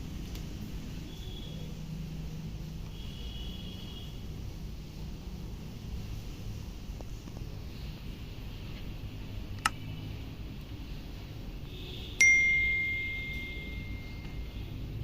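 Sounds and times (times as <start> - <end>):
bell ding: 12.2 - 14.6.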